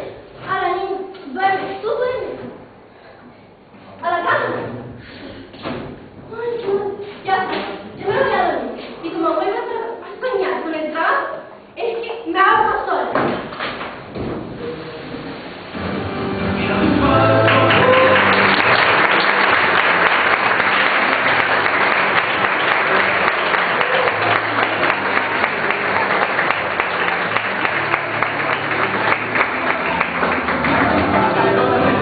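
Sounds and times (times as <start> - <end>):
audience applauding: 15.8 - 32.0.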